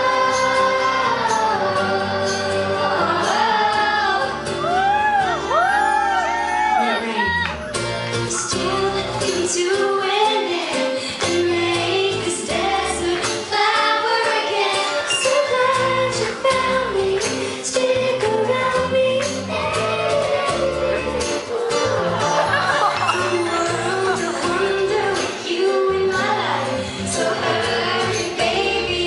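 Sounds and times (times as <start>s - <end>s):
pop band with steady beat: 0.0s - 29.0s
woman singing: 8.3s - 21.8s, 23.0s - 29.0s.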